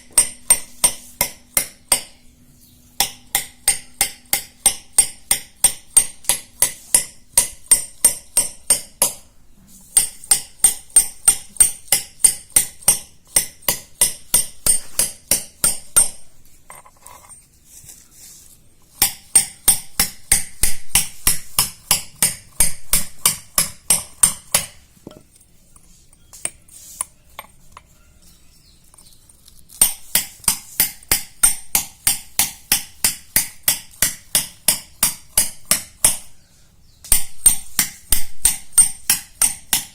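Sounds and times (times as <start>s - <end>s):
hammer tapping on stone: 0.0s - 2.2s, 3.0s - 9.2s, 10.0s - 16.2s, 19.0s - 25.3s, 29.8s - 36.3s, 37.0s - 39.9s.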